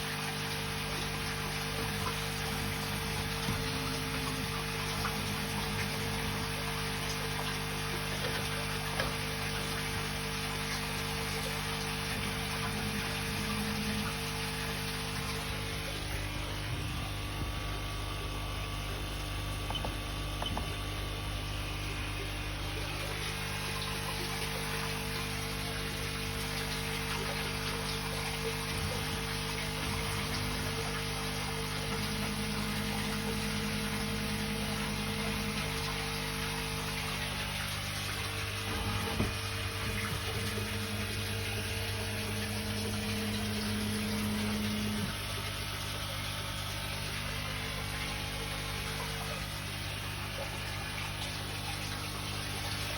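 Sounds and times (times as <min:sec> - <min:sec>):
pond water running: 0:00.0 - 0:52.9
low steady hum: 0:11.3 - 0:52.9.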